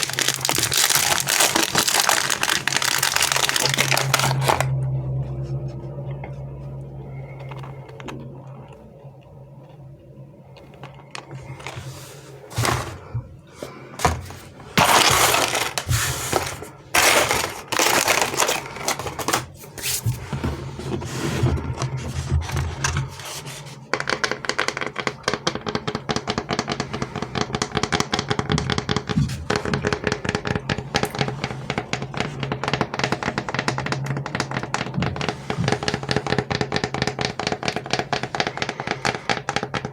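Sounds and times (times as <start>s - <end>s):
sharp clicks of candies handled: 0.0s - 4.7s, 14.8s - 19.5s
candy wrappers crinkling: 0.0s - 4.8s, 10.7s - 13.2s, 14.0s - 20.3s.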